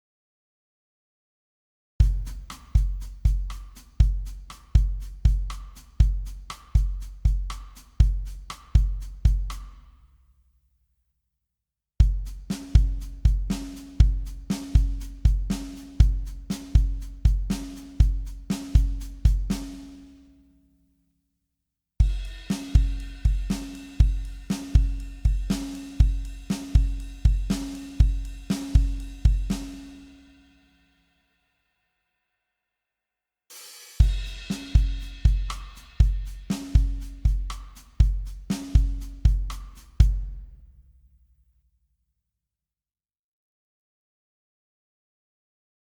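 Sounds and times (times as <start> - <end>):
rock drum beat: 12.0 - 20.0, 22.0 - 30.1, 33.6 - 40.5
hi-hat ticking: 12.2 - 20.1, 22.0 - 30.1, 34.0 - 40.2
cymbal crash: 22.0 - 30.6.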